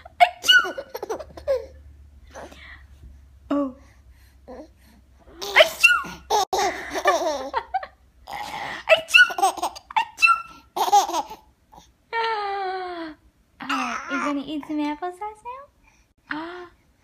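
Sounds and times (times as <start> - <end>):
baby laughing: 0.0 - 2.5, 5.4 - 11.5.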